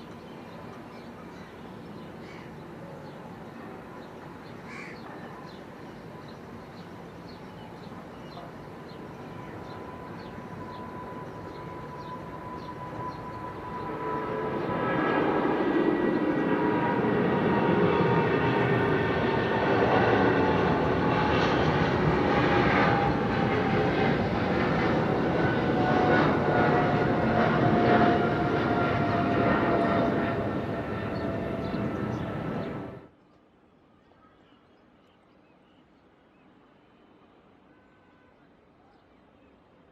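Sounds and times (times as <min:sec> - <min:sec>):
jet engines roaring: 0:09.6 - 0:33.1.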